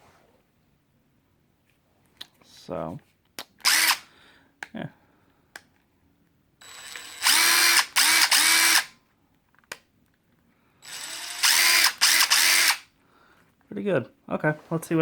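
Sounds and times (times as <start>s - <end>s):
impact wrench motor whine: 3.6s - 4.0s, 6.6s - 8.9s, 10.8s - 12.8s.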